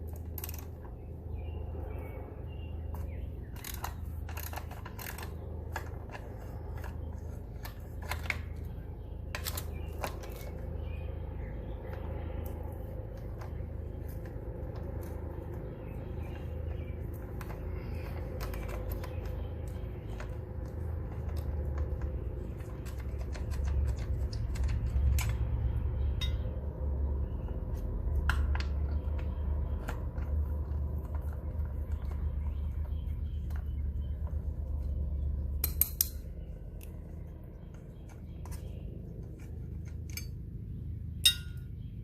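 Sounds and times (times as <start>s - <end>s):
steady low rumble: 0.0s - 42.0s
metallic clicks of hand tools: 35.6s - 36.9s.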